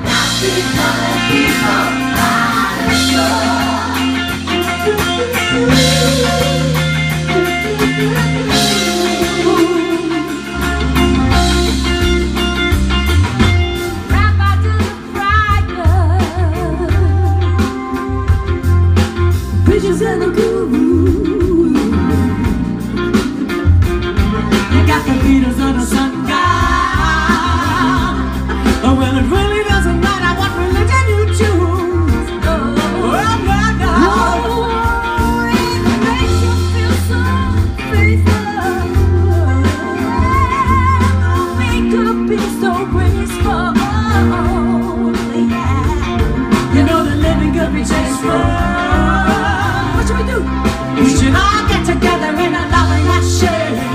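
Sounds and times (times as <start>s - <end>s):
strong bass line: 0.0s - 42.3s
person singing with band: 0.0s - 53.9s.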